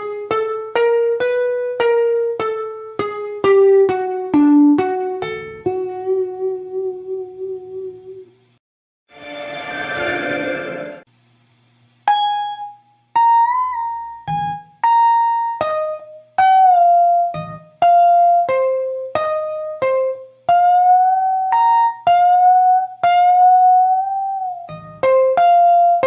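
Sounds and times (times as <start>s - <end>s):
electric guitar picked notes: 0.0s - 8.2s, 12.1s - 26.0s
low hum: 9.1s - 11.1s.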